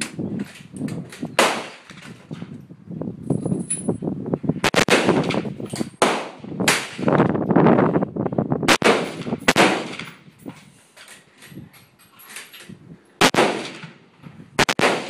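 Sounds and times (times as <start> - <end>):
rifle shots echoing: 1.4 - 1.8, 4.6 - 5.4, 6.0 - 7.1, 8.7 - 10.1, 13.2 - 14.0, 14.6 - 15.0.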